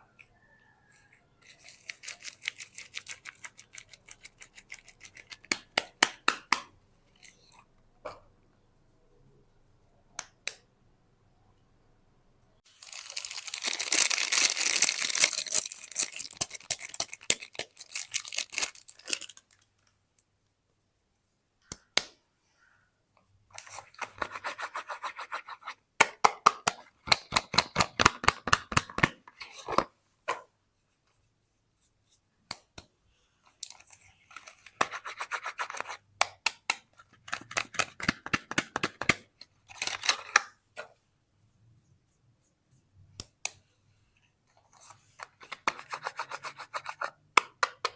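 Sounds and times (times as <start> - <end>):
packaging crinkling and tearing: 12.7 - 19.6.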